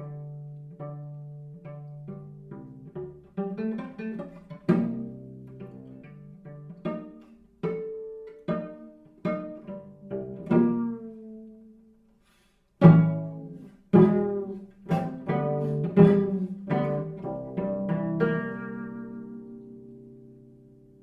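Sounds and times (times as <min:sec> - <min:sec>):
cello plucked pizzicato: 0:00.0 - 0:21.0.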